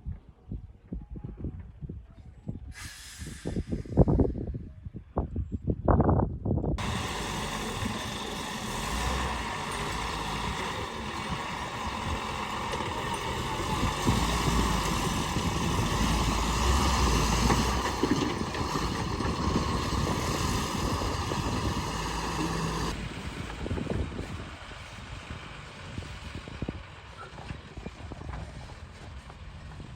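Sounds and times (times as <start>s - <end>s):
wind noise on microphone: 0.0s - 29.9s
truck diesel engine running: 6.8s - 29.9s.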